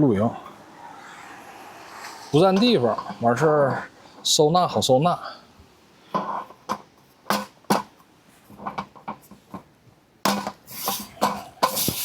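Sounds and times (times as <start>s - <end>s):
table slats clacking and knocking: 6.2s - 8.0s, 10.2s - 11.9s
rustling scrapes: 10.4s - 12.0s.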